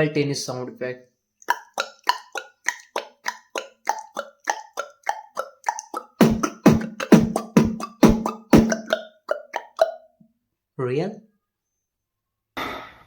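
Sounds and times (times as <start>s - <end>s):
beatboxed mouth clicks: 1.4s - 10.0s
deeper beatboxed strokes: 1.5s - 10.0s.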